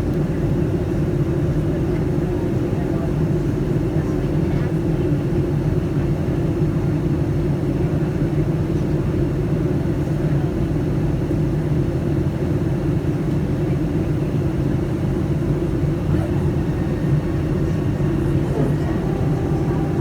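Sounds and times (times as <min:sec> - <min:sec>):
airplane cabin engine hum: 0:00.0 - 0:20.0.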